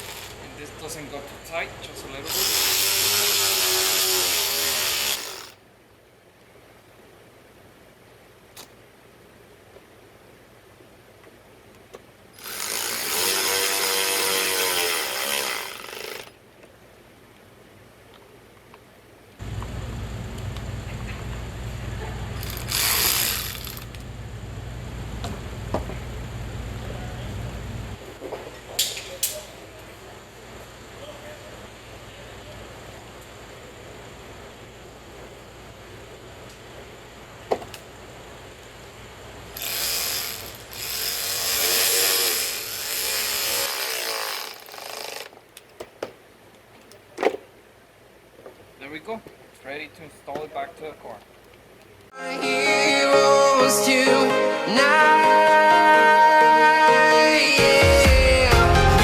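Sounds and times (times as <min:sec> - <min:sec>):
cordless drill whine: 0:00.0 - 0:00.4, 0:02.3 - 0:05.6, 0:22.4 - 0:24.0, 0:39.6 - 0:45.3
low background hiss: 0:00.0 - 0:12.4
hand ratchet clicking: 0:02.3 - 0:05.6, 0:12.4 - 0:16.3, 0:22.4 - 0:24.0, 0:39.6 - 0:45.7.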